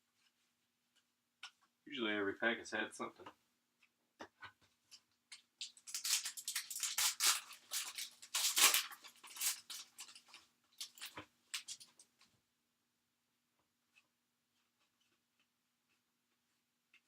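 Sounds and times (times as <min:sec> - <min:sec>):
card pack wrapper tearing: 0:05.6 - 0:11.9.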